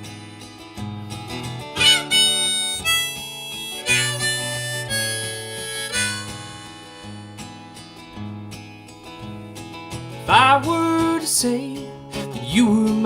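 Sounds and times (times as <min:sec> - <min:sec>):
harmonica melody: 0:00.0 - 0:08.1
low steady guitar accompaniment: 0:00.0 - 0:13.0.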